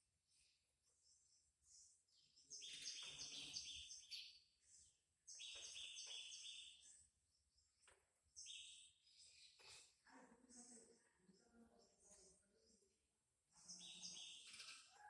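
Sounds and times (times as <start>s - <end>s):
small bird chirping: 0.9s - 9.9s, 13.6s - 15.0s.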